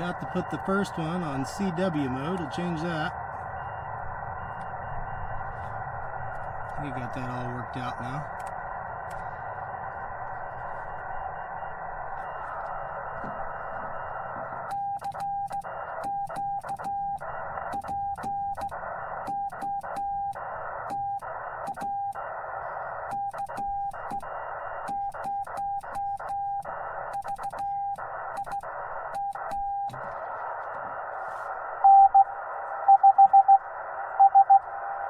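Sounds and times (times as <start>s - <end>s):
morse code tone: 0.0s - 5.6s, 31.8s - 33.6s, 34.2s - 34.7s
receiver hiss: 0.0s - 35.0s.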